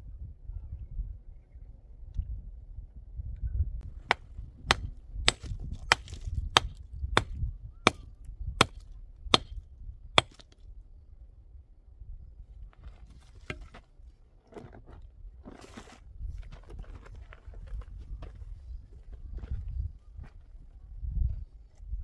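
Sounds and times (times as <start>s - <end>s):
wood being chopped: 3.8s - 8.0s, 8.6s - 9.6s, 10.2s - 10.5s.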